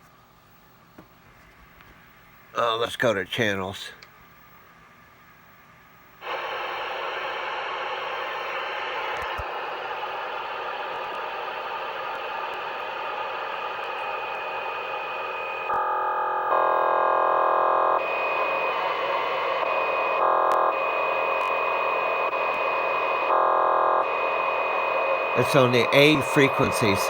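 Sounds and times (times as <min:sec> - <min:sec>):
buzzing radio signal: 0:06.2 - 0:27.0
radio static hiss: 0:06.2 - 0:27.0
steady high tone: 0:14.8 - 0:27.0.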